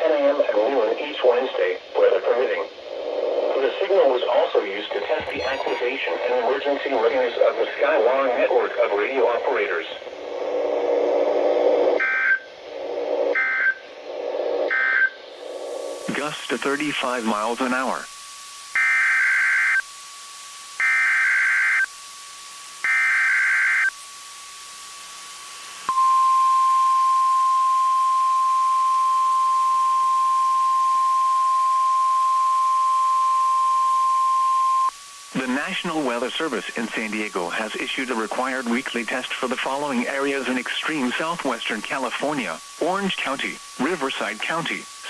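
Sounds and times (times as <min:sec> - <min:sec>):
steady low radio hum: 0:00.0 - 0:18.6, 0:23.8 - 0:45.0
digital data tone bursts: 0:04.9 - 0:06.6, 0:25.9 - 0:44.9
high-pitched warning alarm tone: 0:25.9 - 0:34.9.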